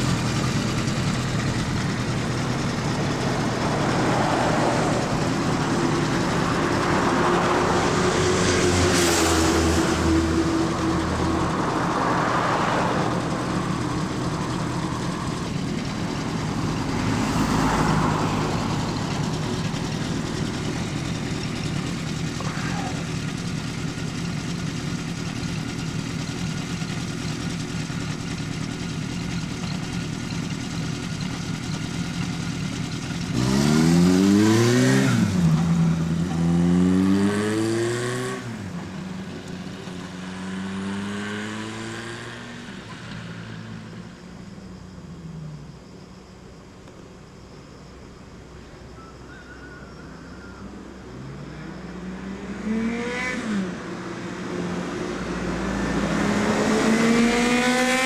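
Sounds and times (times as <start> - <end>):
motorcycle engine idling: 0.0 - 41.5
motorcycle throttle blips: 0.0 - 44.0.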